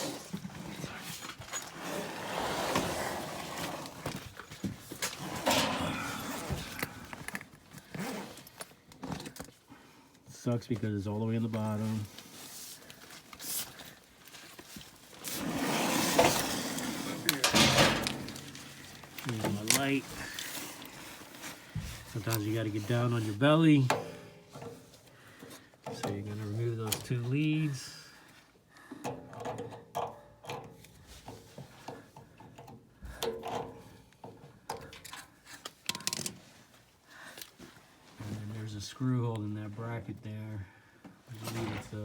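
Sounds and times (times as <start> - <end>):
rustling and scraping: 0.0 - 9.6, 10.8 - 27.5.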